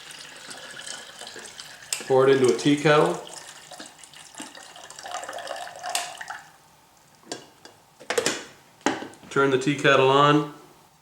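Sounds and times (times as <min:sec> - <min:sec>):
water pouring into kettle: 0:00.0 - 0:06.6.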